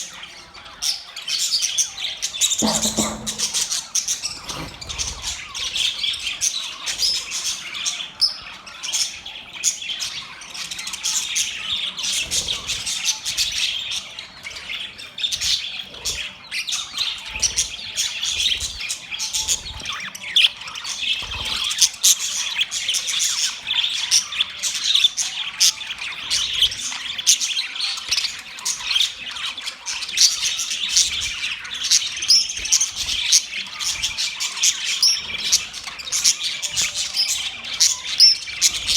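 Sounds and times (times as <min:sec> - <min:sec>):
budgerigars chirping and chattering: 0:00.0 - 0:38.9.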